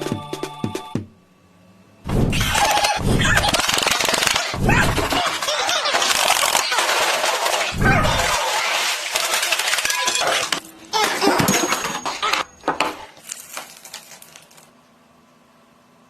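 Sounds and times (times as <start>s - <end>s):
small hard objects clattering: 2.4s - 14.7s.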